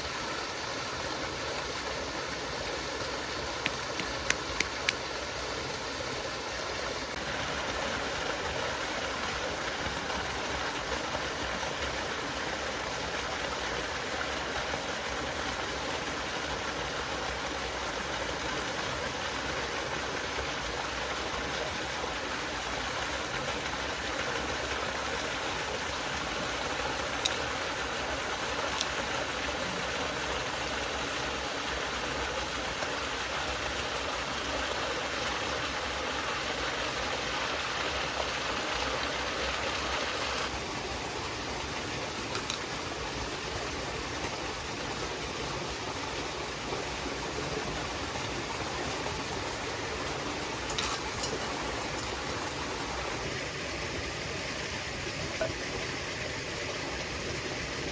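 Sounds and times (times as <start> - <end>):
stream flowing: 0.0 - 57.9
sharp clicks: 3.6 - 5.0.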